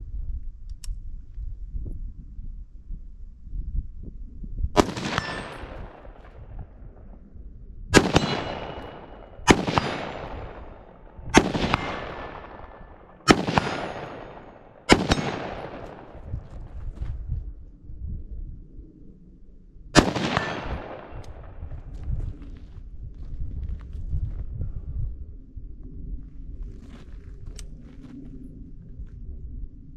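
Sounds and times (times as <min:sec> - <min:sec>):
rifle shots with rolling echo: 0:04.8 - 0:07.2, 0:07.9 - 0:16.6, 0:20.0 - 0:21.9.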